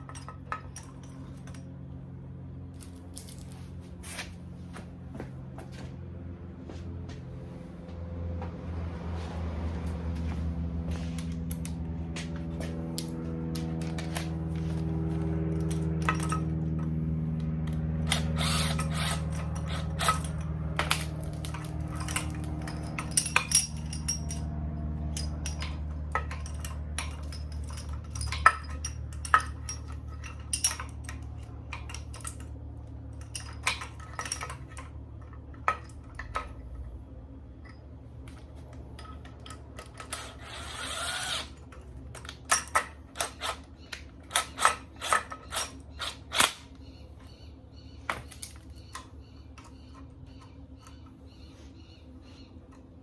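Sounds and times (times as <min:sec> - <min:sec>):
hand tools clinking on metal: 0:00.0 - 0:01.8, 0:11.0 - 0:36.9, 0:37.6 - 0:46.6
steady low hum: 0:00.0 - 0:53.0.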